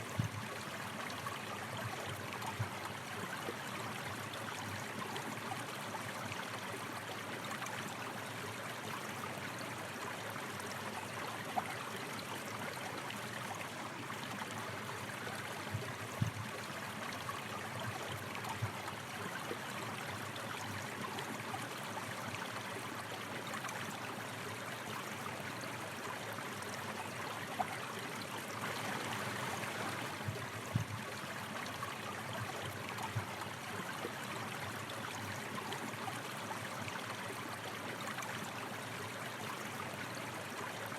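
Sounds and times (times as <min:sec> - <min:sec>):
stream water rushing: 0:13.2 - 0:40.9.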